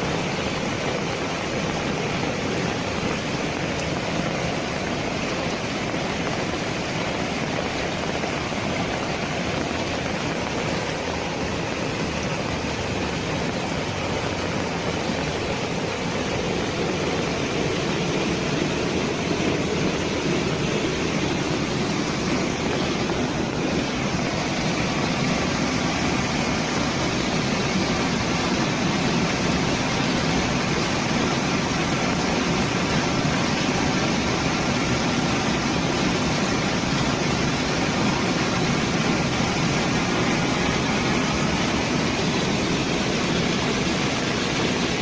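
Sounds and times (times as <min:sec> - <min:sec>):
waterfall rushing: 0:00.0 - 0:45.0.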